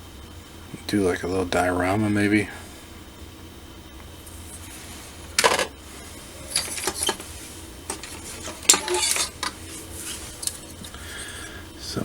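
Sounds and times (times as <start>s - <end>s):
plastic parts clattering: 5.4s - 5.7s, 6.5s - 7.2s, 7.9s - 11.0s.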